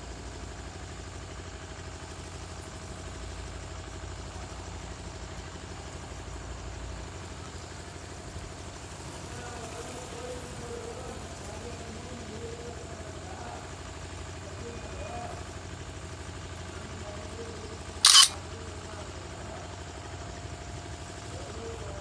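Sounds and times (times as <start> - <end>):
phone camera shutter click: 18.0 - 18.4.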